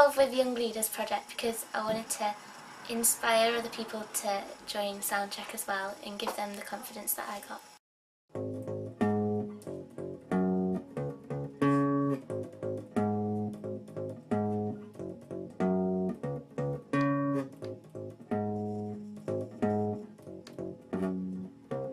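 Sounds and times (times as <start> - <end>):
plucked guitar pattern: 8.3 - 21.9.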